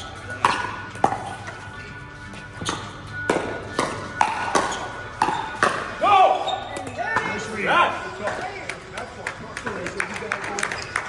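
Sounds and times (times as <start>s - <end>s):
paddles hitting plastic ball: 2.7s - 6.0s.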